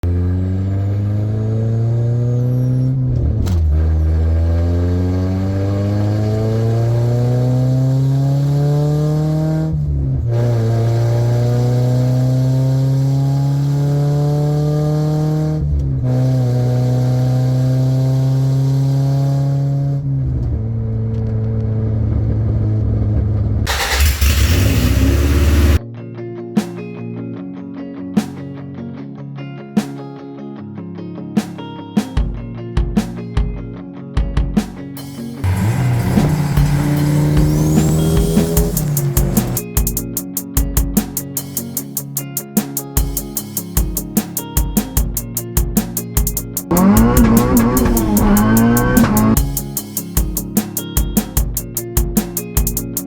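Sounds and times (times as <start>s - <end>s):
car accelerating through gears: 0.0s - 3.0s, 3.6s - 25.8s, 35.4s - 39.6s, 46.7s - 49.4s
loud rushing noise: 23.7s - 25.8s, 35.4s - 39.7s
guitar music: 23.7s - 53.0s.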